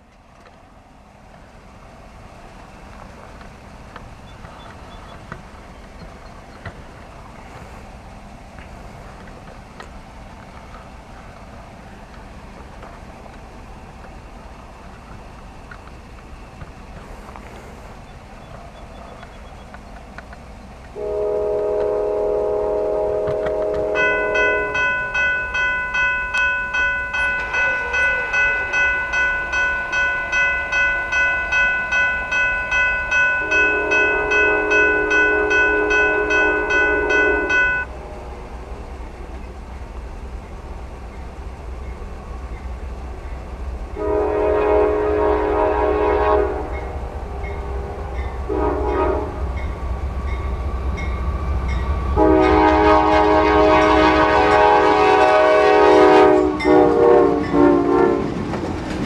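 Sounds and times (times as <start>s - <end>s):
train low rumble: 0.0s - 59.0s
locomotive horn blasts: 21.0s - 25.2s, 33.4s - 37.9s, 44.0s - 49.5s, 52.2s - 58.3s
bell ringing: 23.9s - 37.9s.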